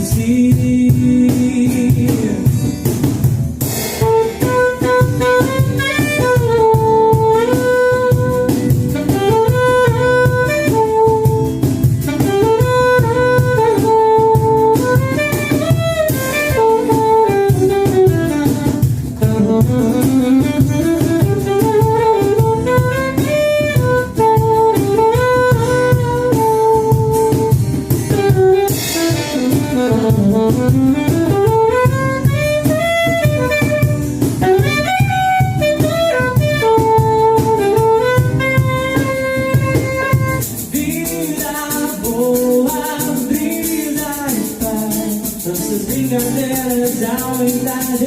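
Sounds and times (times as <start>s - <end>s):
bass: 0.0s - 48.0s
drums: 0.0s - 48.0s
high rattling percussion: 0.0s - 48.0s
lead instrument melody: 3.5s - 41.7s.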